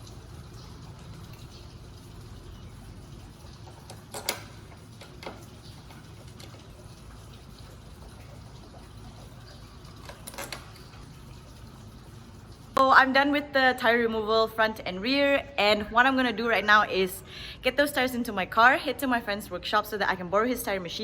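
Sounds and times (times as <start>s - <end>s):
low background hum: 0.0s - 21.0s.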